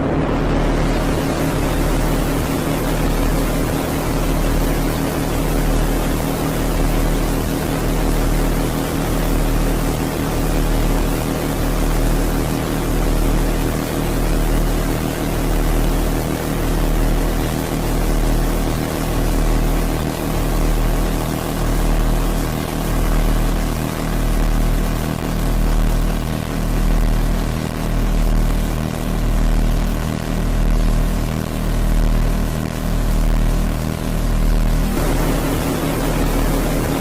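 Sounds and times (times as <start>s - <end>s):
throbbing droning chord: 34.7s - 37.0s.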